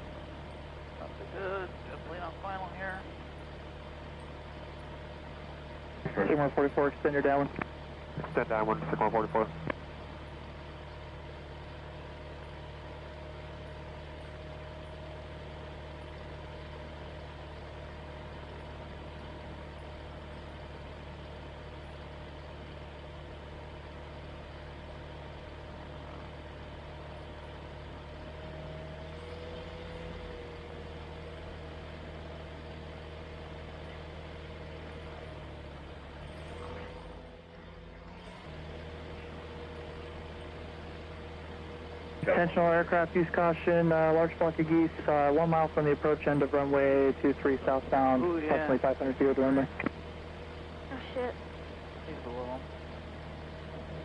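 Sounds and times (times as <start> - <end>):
propeller aircraft engine running: 0.0 - 54.0.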